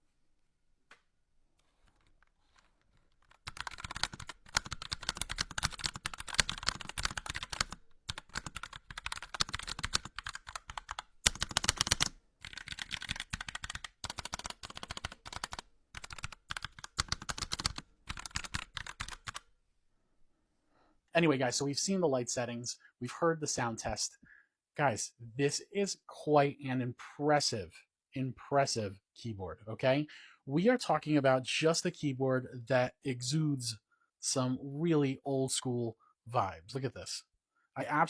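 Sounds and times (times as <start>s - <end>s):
fast mechanical keyboard typing: 3.2s - 19.4s.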